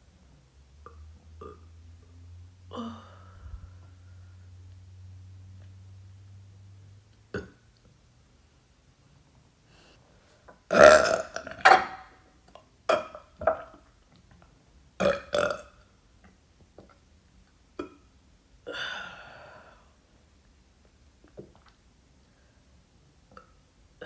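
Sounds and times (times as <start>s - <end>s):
woman burping: 2.7s - 3.3s, 10.7s - 12.1s.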